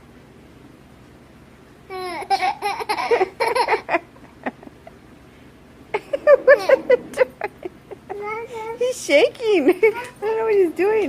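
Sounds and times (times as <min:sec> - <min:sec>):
young child vocalizing and laughing: 0:06.0 - 0:08.8.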